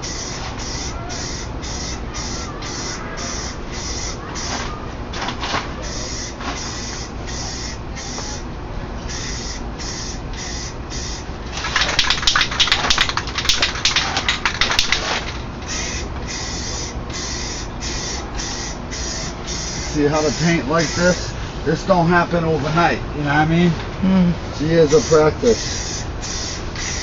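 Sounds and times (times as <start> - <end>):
aerosol spray can hissing: 0.0 - 4.6, 5.8 - 8.4, 9.1 - 21.2, 24.9 - 27.0.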